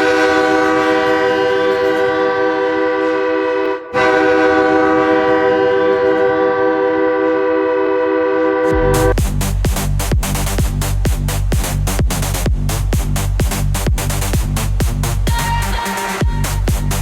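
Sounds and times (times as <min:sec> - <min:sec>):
goal horn blasts: 0:00.0 - 0:09.1.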